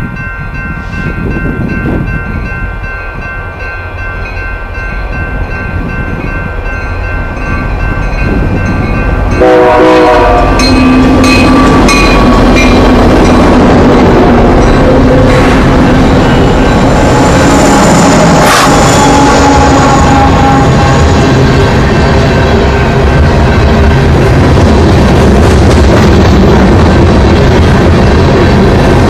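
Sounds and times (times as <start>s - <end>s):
crossing bell ringing: 0.0s - 24.5s
train rumble and wheel clicks: 0.0s - 29.0s
locomotive horn blast: 9.3s - 11.9s, 14.9s - 23.0s.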